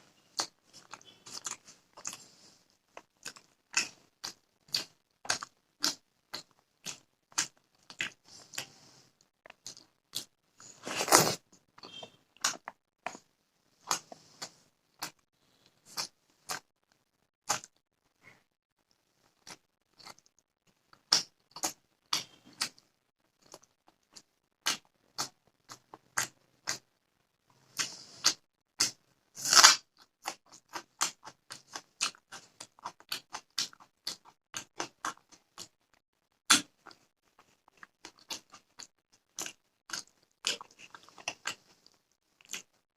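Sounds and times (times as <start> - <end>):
crunchy bites: 0.3 - 2.4, 3.0 - 8.8, 9.4 - 15.2, 27.8 - 35.7, 36.5 - 42.8.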